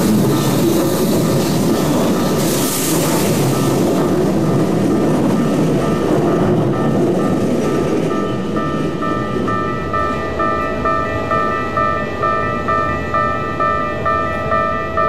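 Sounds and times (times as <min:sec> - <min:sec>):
train running rumble: 0:00.0 - 0:15.0
level crossing alarm dinging: 0:05.4 - 0:15.0.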